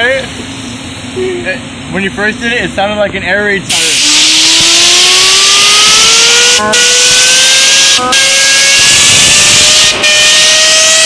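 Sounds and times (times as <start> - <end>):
compressed air hissing: 3.7 - 5.0.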